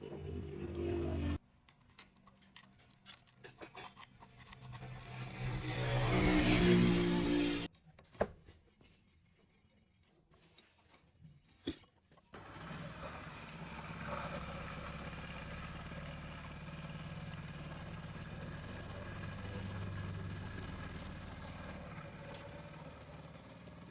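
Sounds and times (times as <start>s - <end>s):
motorcycle engine running: 12.4s - 23.9s.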